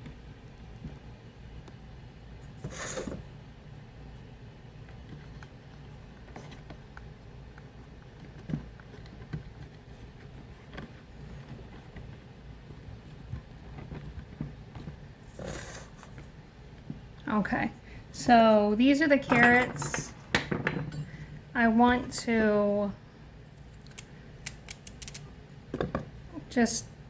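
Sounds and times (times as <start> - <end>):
low steady hum: 0.0 - 27.0.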